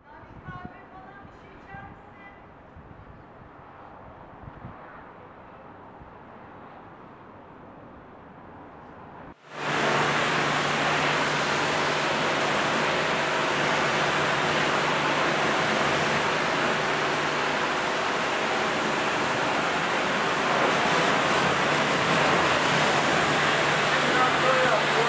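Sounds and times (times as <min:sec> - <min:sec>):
low motor hum: 0:09.5 - 0:25.0
pressure sprayer hissing: 0:09.5 - 0:25.0.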